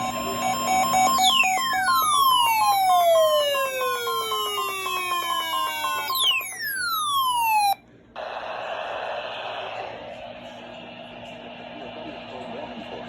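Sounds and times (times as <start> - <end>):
pulsing beeps: 0.0 - 7.8.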